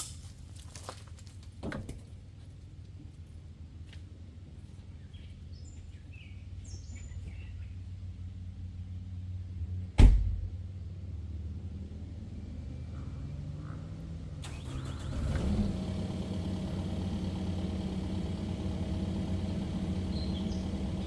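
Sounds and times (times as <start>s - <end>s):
birds chirping: 4.9s - 7.9s, 16.6s - 21.0s
loud thump: 10.0s - 10.6s
diesel engine idling: 12.0s - 21.0s.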